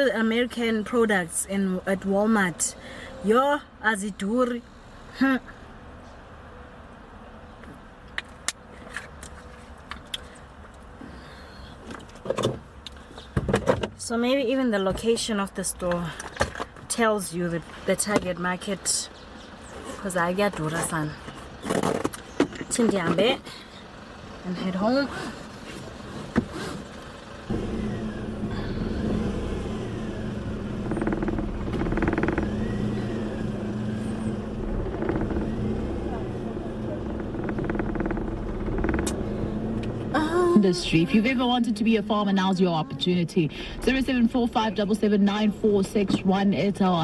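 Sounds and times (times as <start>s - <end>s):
car cabin hum: 27.5s - 46.7s
rustling knock: 30.7s - 33.0s, 34.4s - 40.0s.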